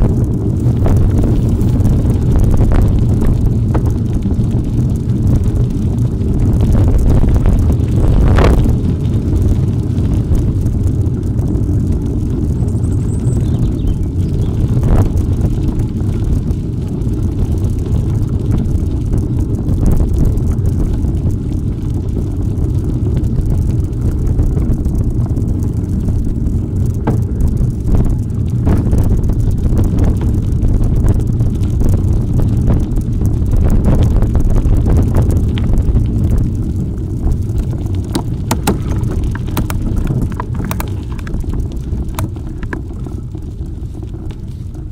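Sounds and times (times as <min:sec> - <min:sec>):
wind buffeting microphone: 0:00.0 - 0:44.9
bike knocks: 0:27.0 - 0:27.4, 0:38.1 - 0:43.0.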